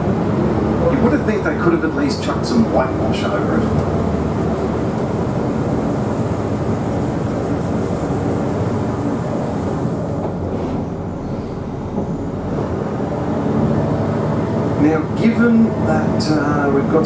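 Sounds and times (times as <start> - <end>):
diesel engine running: 0.0 - 17.0
train wheels rolling on track: 0.0 - 17.0.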